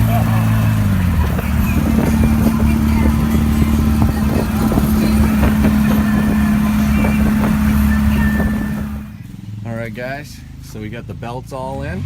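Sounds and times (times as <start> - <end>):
rattles and knocks: 0.0 - 9.1
buggy engine droning: 0.0 - 12.0.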